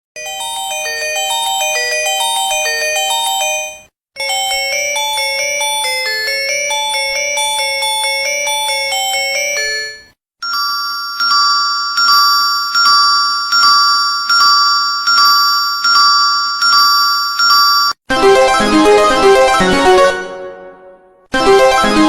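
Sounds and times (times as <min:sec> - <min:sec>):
keyboard melody: 0:00.2 - 0:13.0, 0:17.5 - 0:22.0
repeating chime ringtone: 0:00.2 - 0:19.7
bell-like ringtone melody: 0:00.2 - 0:20.1.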